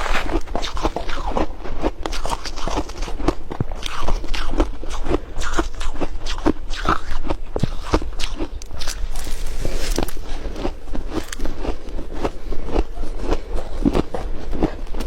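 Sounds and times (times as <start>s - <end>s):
ice crunching while chewed: 0.0s - 15.0s.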